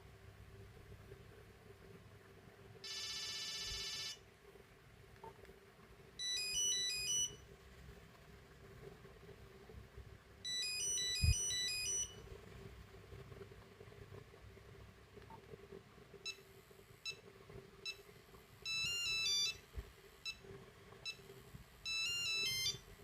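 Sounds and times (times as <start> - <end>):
monophonic phone ringtone: 2.8 - 4.2, 6.2 - 7.4, 10.4 - 12.2, 18.6 - 19.6, 21.8 - 22.8.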